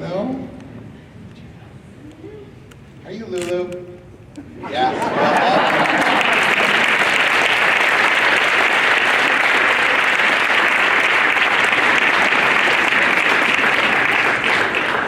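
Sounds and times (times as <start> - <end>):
audience applauding: 5.0 - 15.0.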